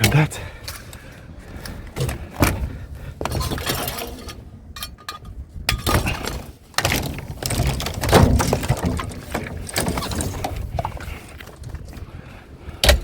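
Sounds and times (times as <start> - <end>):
scrap debris clattering: 3.2 - 11.7.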